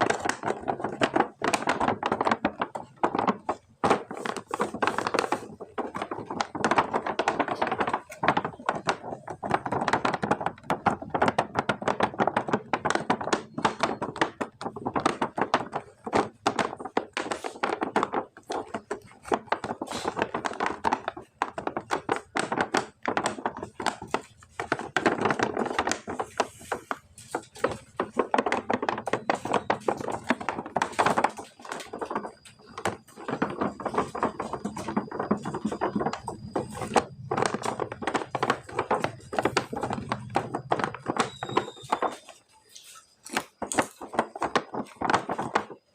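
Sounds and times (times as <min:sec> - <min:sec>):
plastic packaging taps and clicks: 0:00.0 - 0:45.9.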